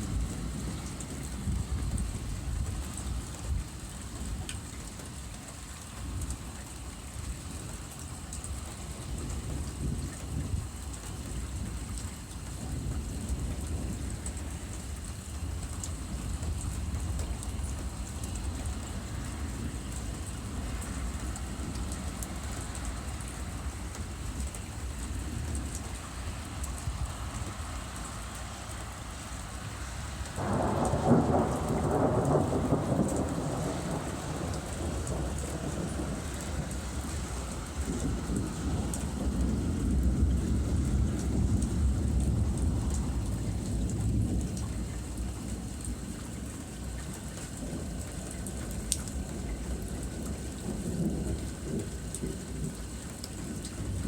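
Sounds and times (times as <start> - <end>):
low rolling thunder: 0.0 - 4.4, 8.7 - 54.0
steady rain: 0.0 - 54.0
loud thunderclap: 30.4 - 44.8.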